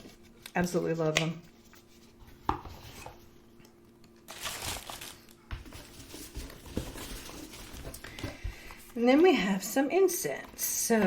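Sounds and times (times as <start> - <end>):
paper packaging rustling: 4.3 - 9.1.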